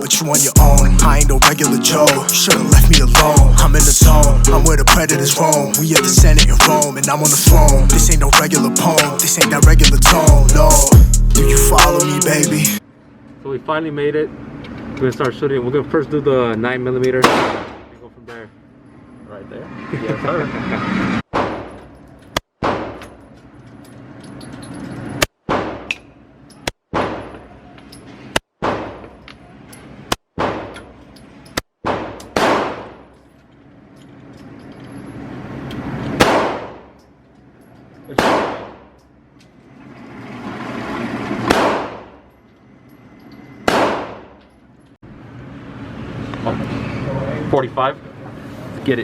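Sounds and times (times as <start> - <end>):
handgun shots: 17.2 - 17.9, 31.8 - 33.0, 36.2 - 36.8, 38.2 - 38.8, 41.5 - 42.1, 43.6 - 44.3.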